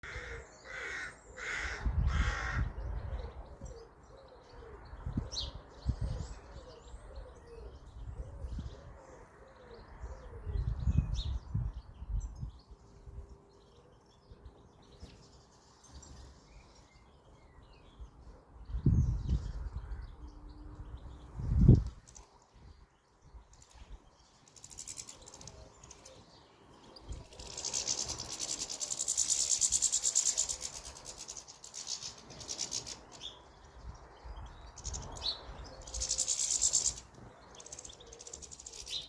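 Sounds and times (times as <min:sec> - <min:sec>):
crow cawing: 0:00.0 - 0:02.8
small birds chirping: 0:00.0 - 0:39.0
low rumbling wind gusts: 0:01.2 - 0:03.8, 0:09.9 - 0:13.3, 0:17.6 - 0:24.2.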